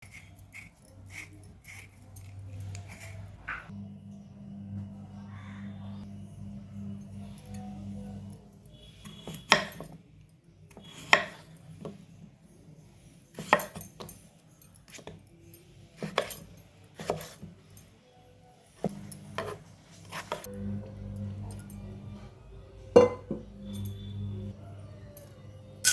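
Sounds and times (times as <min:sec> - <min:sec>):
utensils clinking against dishes: 0:10.7 - 0:18.0, 0:23.0 - 0:25.9.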